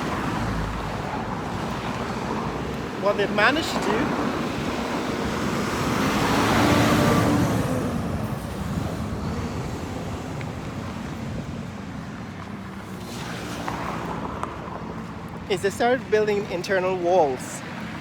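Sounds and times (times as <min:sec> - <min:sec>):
vehicle passing close: 0:00.0 - 0:15.7
steady road noise: 0:00.0 - 0:18.0.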